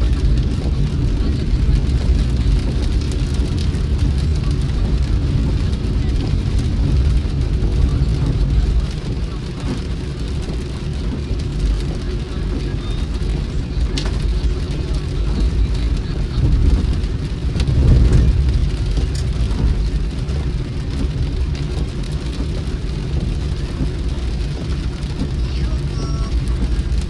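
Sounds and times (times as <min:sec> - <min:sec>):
car engine and road noise: 0:00.0 - 0:27.0
raindrop ticks: 0:00.0 - 0:27.0.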